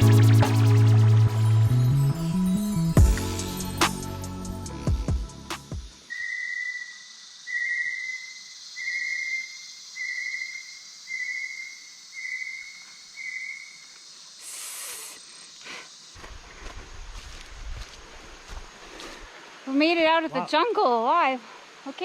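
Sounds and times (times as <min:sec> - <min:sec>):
high hiss of insects: 0:02.7 - 0:22.0
bird whistling call: 0:06.1 - 0:13.8.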